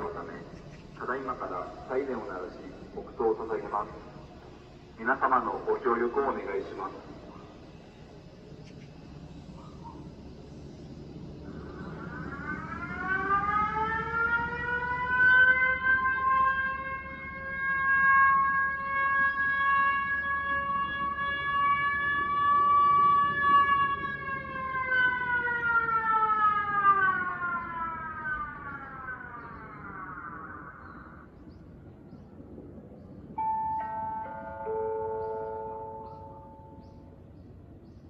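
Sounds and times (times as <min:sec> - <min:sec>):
warning siren wailing: 0:11.4 - 0:31.4, 0:33.3 - 0:37.3.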